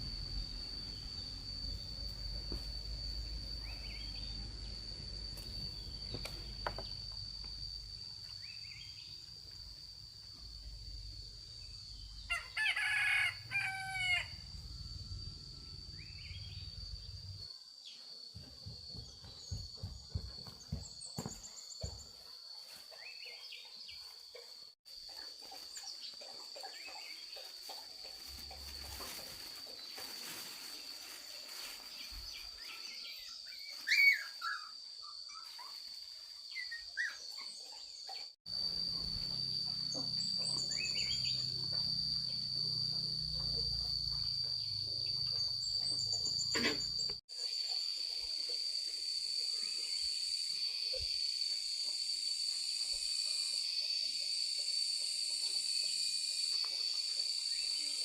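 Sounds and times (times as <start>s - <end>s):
high-pitched insect drone: 0.0s - 58.0s
bird chirps: 39.9s - 41.7s.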